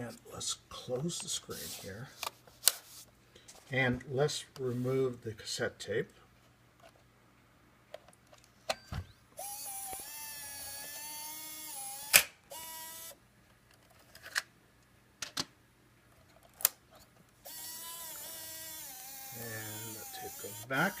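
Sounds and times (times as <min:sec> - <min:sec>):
cassette motor whirring: 0:08.9 - 0:13.2, 0:17.4 - 0:21.0.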